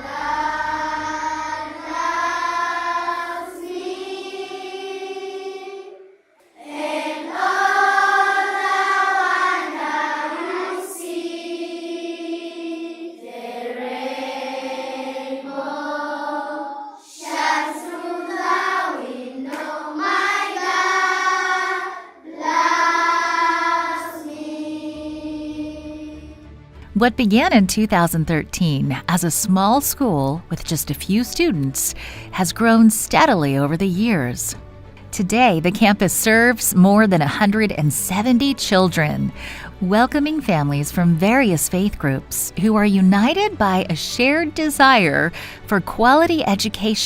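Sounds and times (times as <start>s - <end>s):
children's choir singing: 0.0s - 26.5s.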